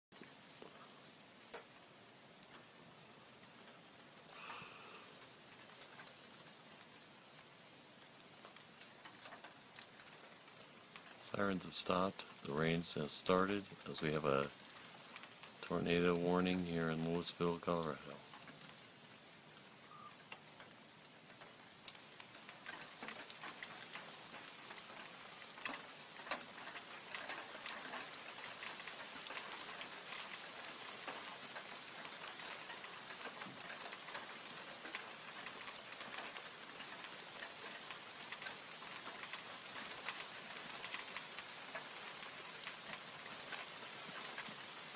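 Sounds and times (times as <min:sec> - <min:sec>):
rain falling: 0:00.1 - 0:44.9
raindrops ticking on a surface: 0:00.2 - 0:44.9.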